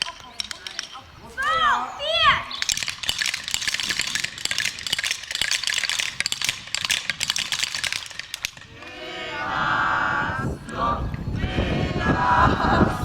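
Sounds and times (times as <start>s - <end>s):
wooden rattles clattering: 0.0s - 1.1s, 2.6s - 8.8s
children chanting: 8.7s - 13.0s.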